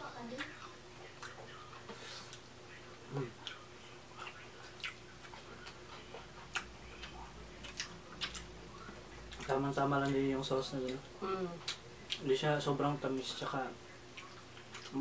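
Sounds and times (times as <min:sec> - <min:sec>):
faint steady hum: 0:00.0 - 0:15.0
person chewing: 0:00.4 - 0:02.5, 0:03.4 - 0:10.2, 0:11.6 - 0:12.3, 0:14.1 - 0:15.0.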